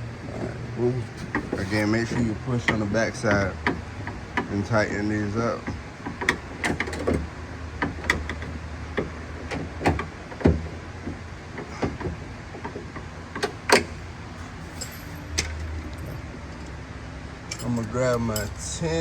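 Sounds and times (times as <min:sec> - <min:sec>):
clicks and knocks of tools: 0:05.6 - 0:16.8, 0:17.5 - 0:18.6.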